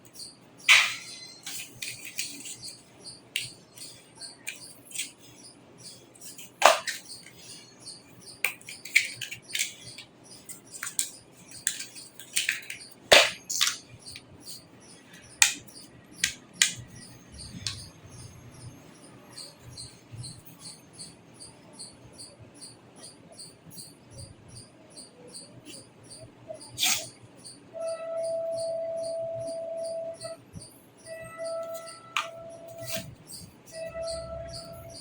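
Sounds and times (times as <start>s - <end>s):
small hard parts clicking: 0.0s - 5.4s, 8.3s - 17.9s
cricket chirping: 0.0s - 35.0s.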